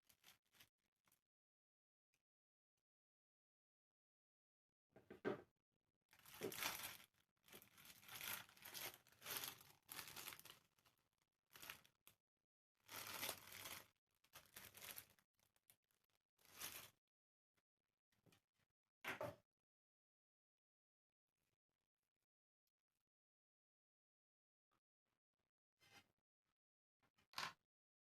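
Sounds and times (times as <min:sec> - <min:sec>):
packaging torn and crinkled: 0:06.2 - 0:10.9, 0:11.5 - 0:12.0, 0:12.9 - 0:15.2, 0:16.5 - 0:16.9.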